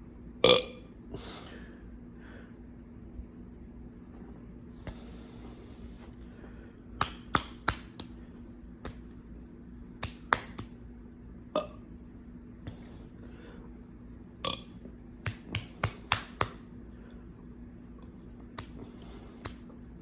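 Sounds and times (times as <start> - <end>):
person burping: 0.4 - 0.9.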